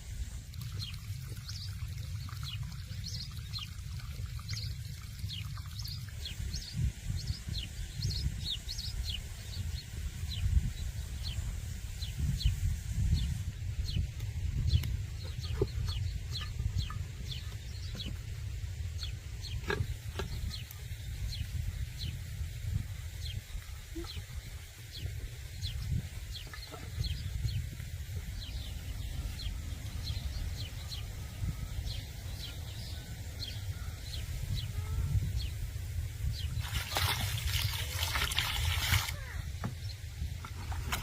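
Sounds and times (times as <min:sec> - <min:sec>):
birds chirping in falling peeps: 0:12.0 - 0:41.0.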